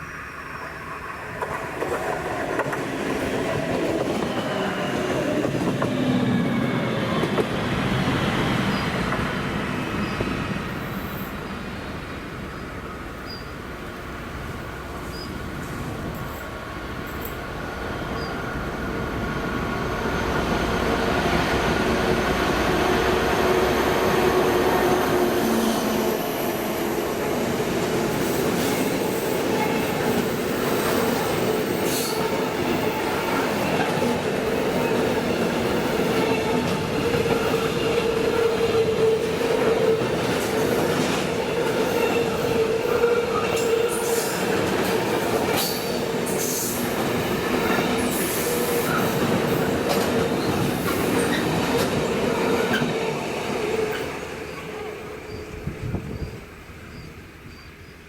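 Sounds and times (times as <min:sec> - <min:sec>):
squealing train wheels: 0:00.0 - 0:13.6, 0:18.0 - 0:18.6, 0:19.4 - 0:58.0
freight train passing: 0:00.0 - 0:58.0.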